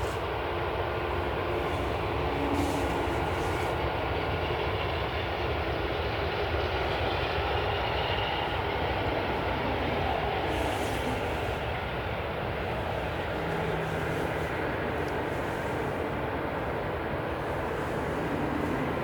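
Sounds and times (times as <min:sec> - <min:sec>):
airliner engine rumble: 0:00.0 - 0:19.0.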